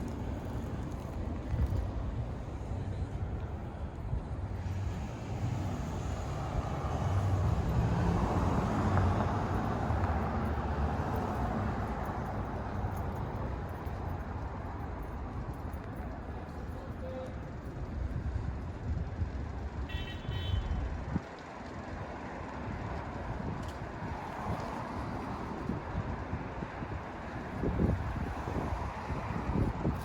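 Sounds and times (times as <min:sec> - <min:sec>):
vehicle passing: 0:04.6 - 0:12.3.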